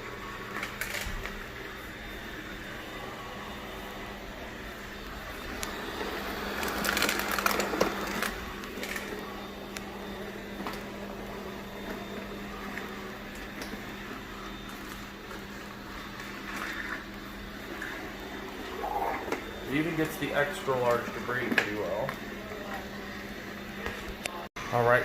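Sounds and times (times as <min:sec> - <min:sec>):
robot vacuum humming: 0:00.0 - 0:25.0
dry cat food crackling and rattling: 0:00.5 - 0:01.4, 0:06.6 - 0:09.3.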